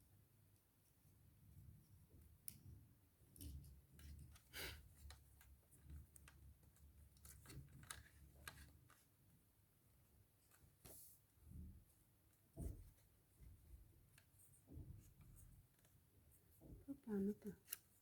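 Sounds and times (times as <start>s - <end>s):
faint clicks and handling noises: 2.2s - 9.5s, 12.3s - 18.0s.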